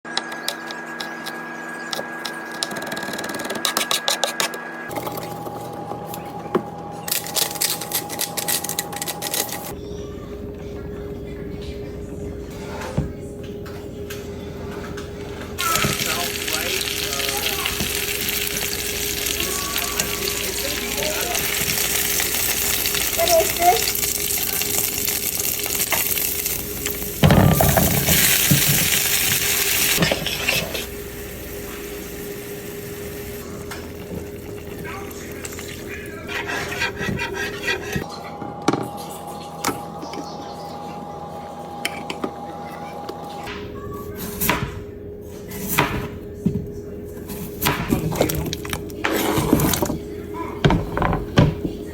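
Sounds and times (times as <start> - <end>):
utensils and cookware clattering: 12.4 - 32.0, 33.4 - 40.4, 47.2 - 51.9
food sizzling in a pan: 15.6 - 34.8
stirring: 32.9 - 38.1.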